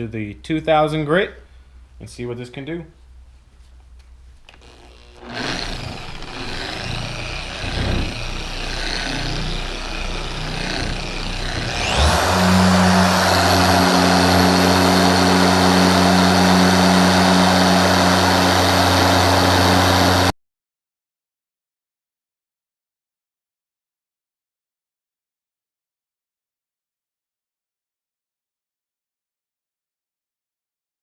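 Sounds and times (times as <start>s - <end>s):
car polisher whining: 4.5s - 20.3s.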